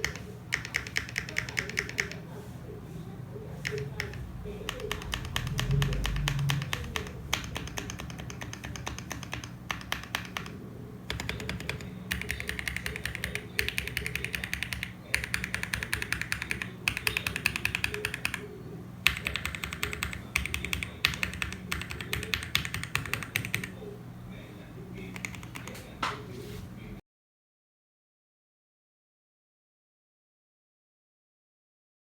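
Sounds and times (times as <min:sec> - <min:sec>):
mechanical keyboard typing: 0:00.0 - 0:02.2, 0:03.6 - 0:18.4, 0:19.0 - 0:23.8, 0:25.1 - 0:25.8.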